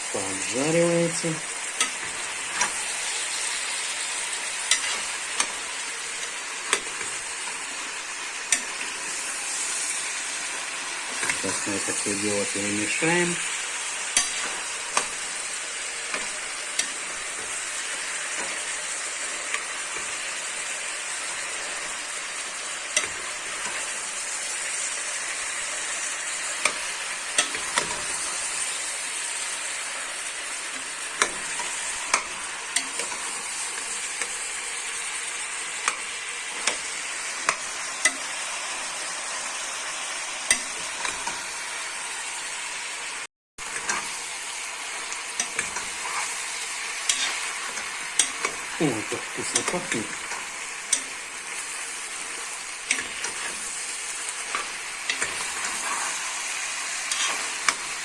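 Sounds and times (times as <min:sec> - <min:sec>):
meat and vegetables sizzling: 0:00.0 - 0:58.0
utensil scraping a pot: 0:47.0 - 0:48.6, 0:54.5 - 0:56.4, 0:57.0 - 0:58.0.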